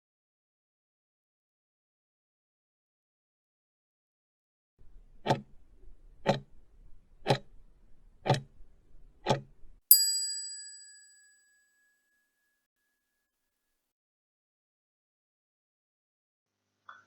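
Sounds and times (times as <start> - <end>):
clock ticks: 5.2 - 5.5, 6.2 - 6.5, 7.2 - 7.5, 8.2 - 8.5
bell ding: 9.9 - 12.2.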